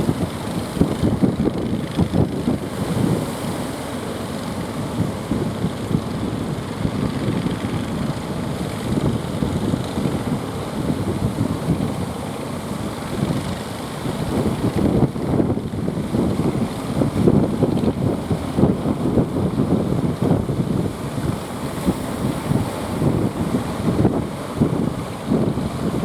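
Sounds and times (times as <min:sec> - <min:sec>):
boat engine running: 0:00.0 - 0:26.0
wind buffeting microphone: 0:00.0 - 0:26.0.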